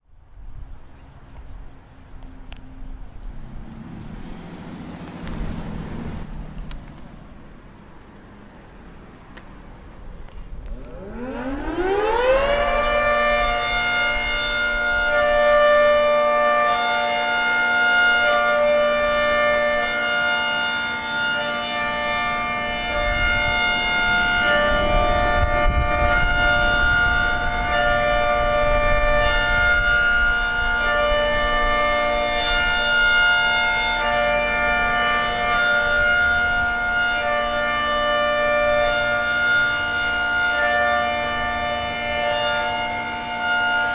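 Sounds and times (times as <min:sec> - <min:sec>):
warning siren winding up: 0:10.6 - 0:43.9.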